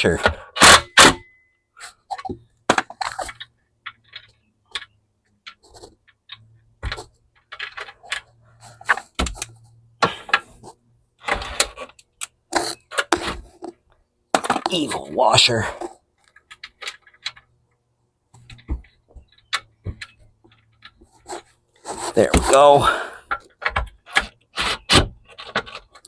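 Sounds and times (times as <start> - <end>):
metal clinks taps and scrapes: 1.8 - 13.8.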